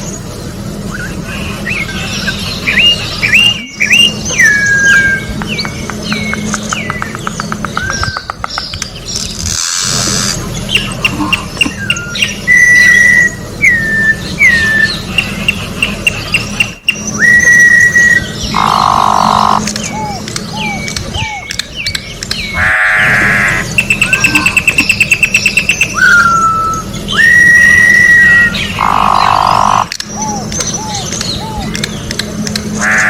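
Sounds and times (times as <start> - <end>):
bird singing whistled notes: 0.8 - 9.4, 10.6 - 22.6, 23.6 - 29.4, 30.0 - 31.9.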